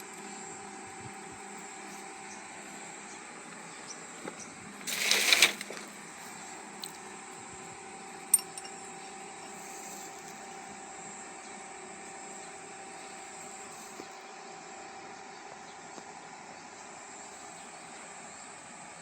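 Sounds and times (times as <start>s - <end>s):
steady background hum: 0.0s - 19.0s
metal tools clinking and rattling: 8.3s - 9.8s.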